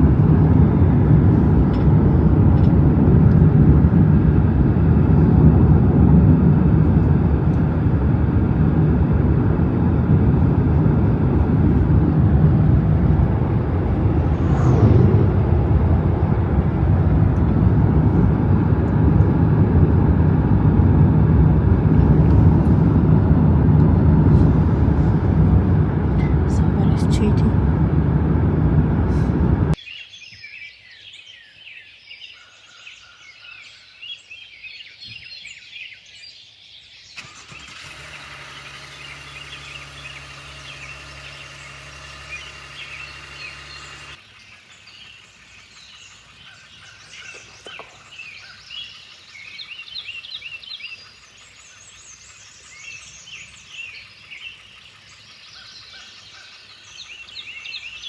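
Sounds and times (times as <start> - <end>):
loud noise: 10.9 - 20.5
birds chirping and singing: 42.4 - 58.0.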